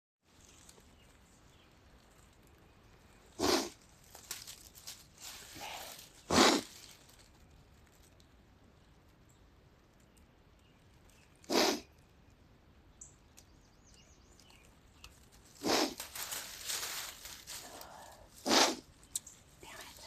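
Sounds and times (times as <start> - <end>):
person sniffling: 17.7 - 18.8.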